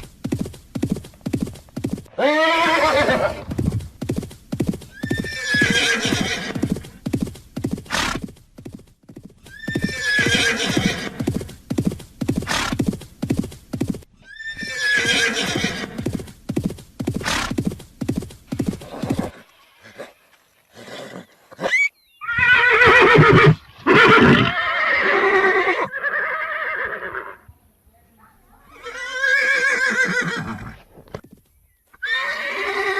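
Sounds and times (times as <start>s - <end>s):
clip-clop of hooves: 0.0s - 21.7s, 30.2s - 32.8s
horses whinnying: 2.1s - 3.5s, 4.9s - 6.9s, 9.4s - 11.4s, 14.2s - 16.2s, 18.7s - 27.4s, 28.7s - 30.9s, 32.0s - 32.9s.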